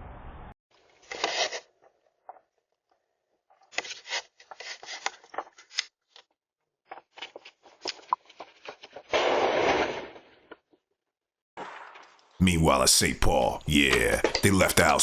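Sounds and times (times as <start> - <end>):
rustling and scraping: 0.8 - 2.7, 3.4 - 9.1
clicking noises: 12.4 - 15.0.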